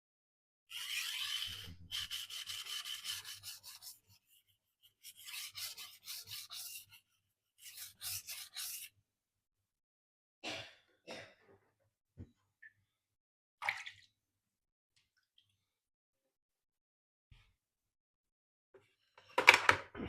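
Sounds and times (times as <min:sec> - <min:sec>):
knife scraping on whetstone: 0:00.7 - 0:08.9.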